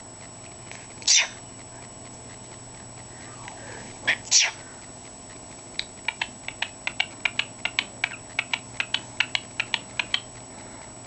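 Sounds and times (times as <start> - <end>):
cockatiel rapid sharp clicks: 5.5 - 10.4.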